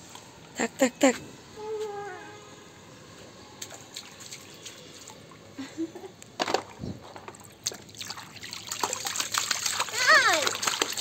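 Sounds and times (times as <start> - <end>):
water dripping and splashing: 3.6 - 5.3, 7.3 - 11.0.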